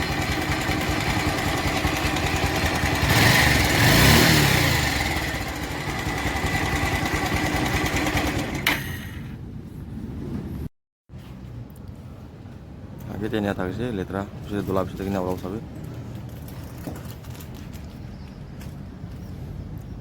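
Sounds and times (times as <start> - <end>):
motorcycle engine with chain rattle: 0.0 - 3.8, 4.9 - 9.0.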